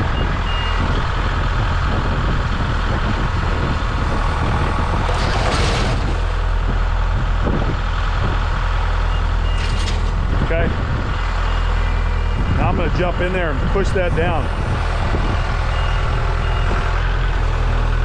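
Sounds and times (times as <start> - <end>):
tractor engine running: 0.0 - 18.0
loader tipping debris: 4.2 - 7.7, 9.3 - 10.7.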